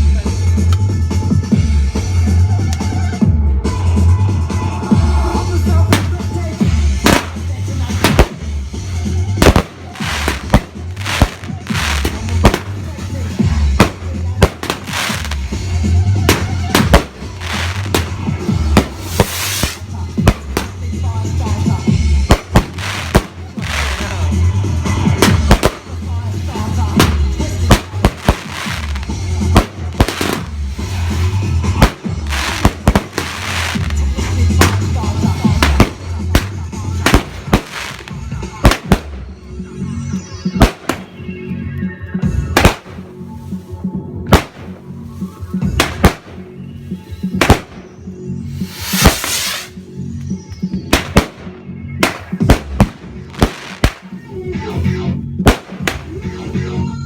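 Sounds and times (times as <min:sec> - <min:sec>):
music playing: 0:00.0 - 0:57.0
fireworks crackling: 0:05.0 - 0:41.2, 0:42.4 - 0:49.9, 0:50.8 - 0:54.3, 0:55.4 - 0:56.6
fireworks bangs: 0:05.8 - 0:39.4, 0:40.5 - 0:41.2, 0:42.4 - 0:43.2, 0:44.3 - 0:49.8, 0:50.9 - 0:54.2, 0:55.4 - 0:56.3.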